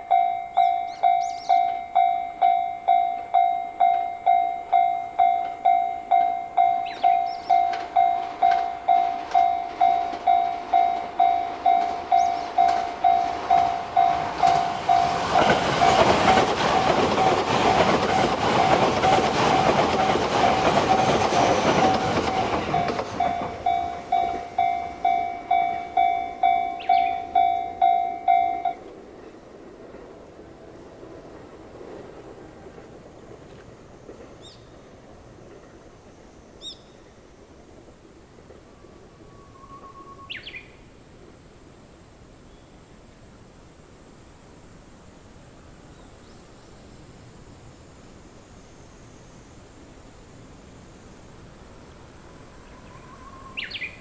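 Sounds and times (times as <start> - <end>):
level crossing bell ringing: 0.0 - 16.0, 22.2 - 28.8
train wheels clicking over rails: 5.2 - 36.3.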